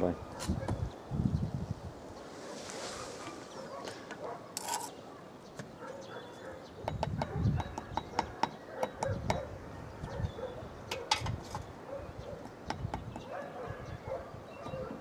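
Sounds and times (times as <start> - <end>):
wind gusts on microphone: 0.0 - 3.8, 6.9 - 7.8, 9.0 - 15.0
steel trowel clinking on brick: 4.6 - 5.0.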